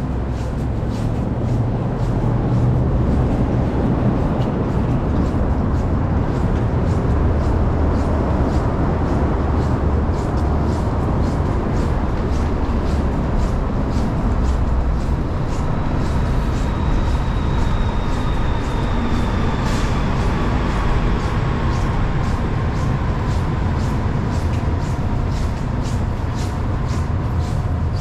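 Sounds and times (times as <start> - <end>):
city traffic rumble: 0.0 - 28.0
passing vehicle whine: 0.0 - 28.0
wind: 0.0 - 28.0.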